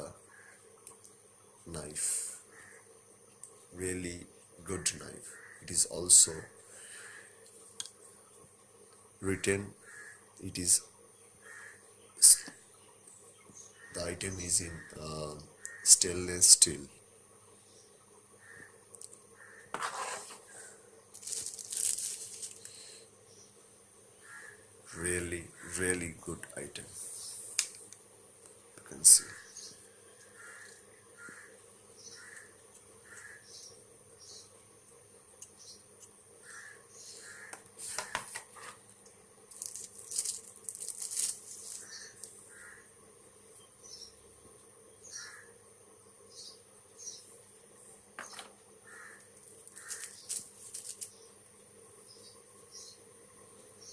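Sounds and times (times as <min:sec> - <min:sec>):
packaging crinkling: 0:21.1 - 0:22.9, 0:39.5 - 0:42.4, 0:49.4 - 0:51.2.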